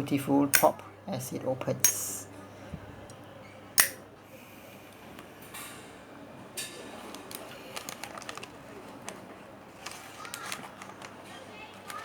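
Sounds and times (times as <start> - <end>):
lighter lid clicking: 0.6 - 0.8, 3.8 - 4.0.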